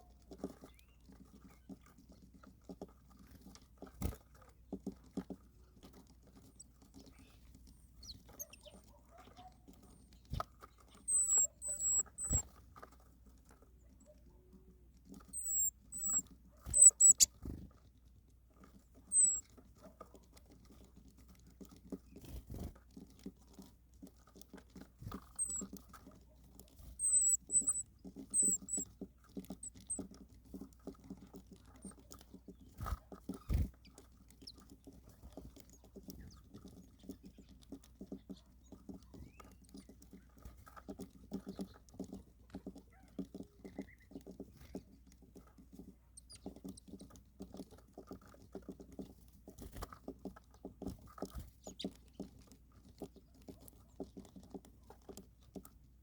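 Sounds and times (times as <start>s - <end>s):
birds pecking at food: 0.0s - 56.0s
high bird chirps: 8.0s - 9.5s, 10.9s - 12.4s, 15.3s - 17.3s, 19.1s - 19.4s, 25.4s - 25.7s, 27.0s - 28.8s, 46.2s - 46.5s.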